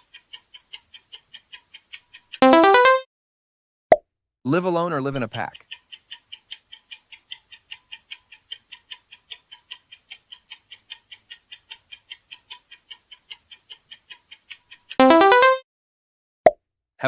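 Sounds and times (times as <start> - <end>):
fast clock ticking: 0.0 - 3.0, 5.1 - 15.6.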